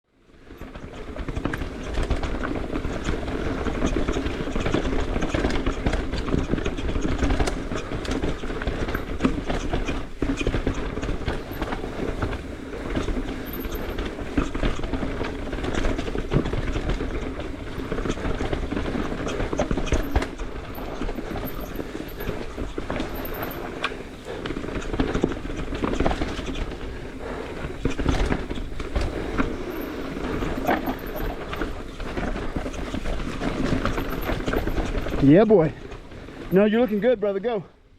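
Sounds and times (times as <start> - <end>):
bike chain and frame rattling: 0.2 - 37.7
bike tyres clattering over rocks: 0.4 - 37.7.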